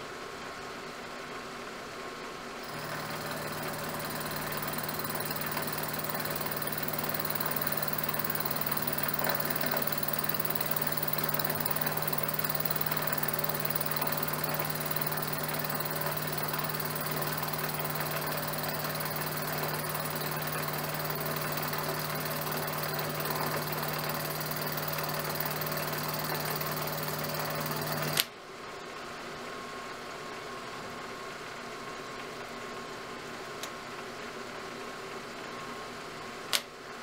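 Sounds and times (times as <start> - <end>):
milling machine cutting metal: 2.6 - 28.2.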